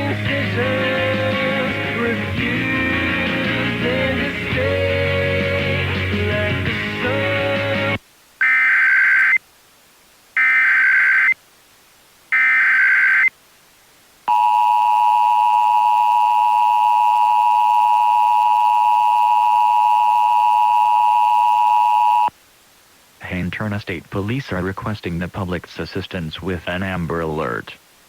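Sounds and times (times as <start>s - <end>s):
warbling data bursts: 8.4s - 9.4s, 10.4s - 11.4s, 12.3s - 13.3s.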